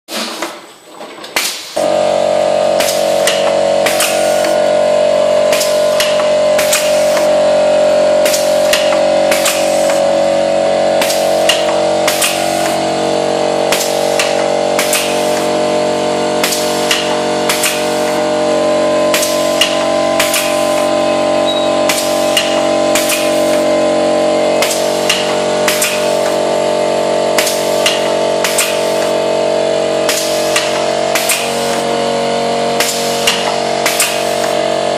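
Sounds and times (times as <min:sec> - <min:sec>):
machine hum: 0:01.8 - 0:34.9
sharp mechanical clacks: 0:02.8 - 0:04.6, 0:05.4 - 0:07.4, 0:08.2 - 0:10.1, 0:11.0 - 0:12.8, 0:13.7 - 0:15.6, 0:16.4 - 0:18.2, 0:19.1 - 0:20.9, 0:21.8 - 0:23.7, 0:24.6 - 0:26.4, 0:27.3 - 0:29.2, 0:30.0 - 0:31.9, 0:32.8 - 0:34.6.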